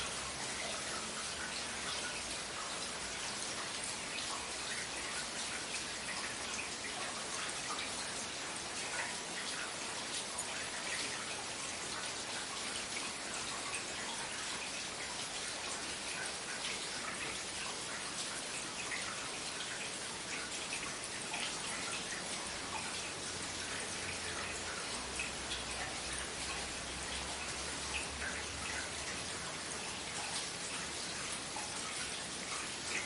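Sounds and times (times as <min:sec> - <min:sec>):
steady rain pattering: 0:00.0 - 0:33.0.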